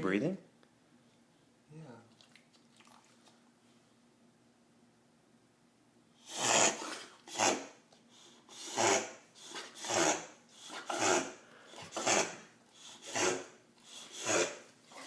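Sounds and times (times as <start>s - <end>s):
dog reverse sneezing: 6.2s - 15.0s.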